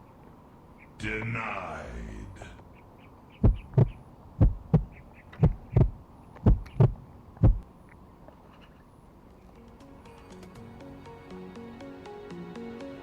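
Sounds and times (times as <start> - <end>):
heartbeat thumps: 3.4 - 7.6.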